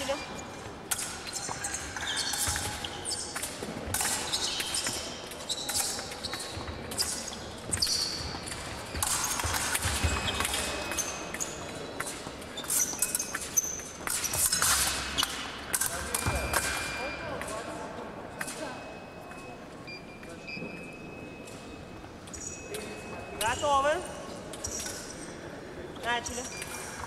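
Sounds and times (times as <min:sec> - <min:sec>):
footwork thuds and squeaks: 0:00.0 - 0:17.4
fencing blades clashing: 0:00.0 - 0:19.4, 0:21.5 - 0:25.4.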